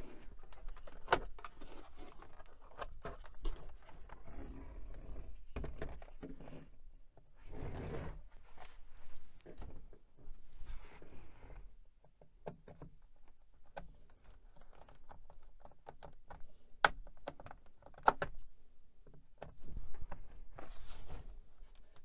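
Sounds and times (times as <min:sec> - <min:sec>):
rustling handling noise: 0:08.3 - 0:11.3, 0:19.5 - 0:22.0.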